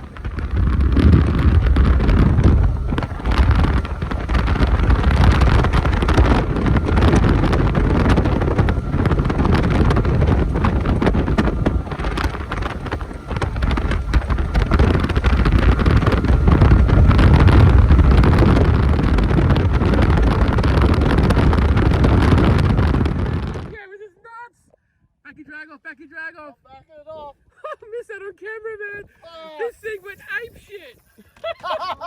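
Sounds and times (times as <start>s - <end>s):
motorboat engine rumble: 0.0s - 23.8s
wind buffeting microphone: 0.0s - 23.8s.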